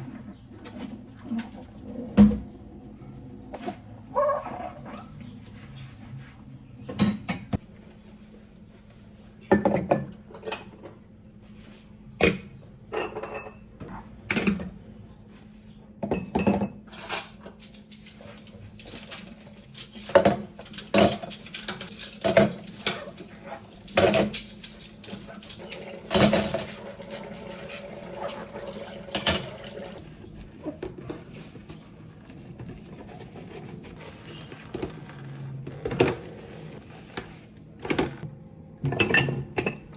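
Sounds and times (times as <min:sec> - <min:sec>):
dishes and cutlery clattering: 0:06.8 - 0:07.6, 0:12.2 - 0:13.6, 0:16.0 - 0:27.4, 0:38.8 - 0:39.9.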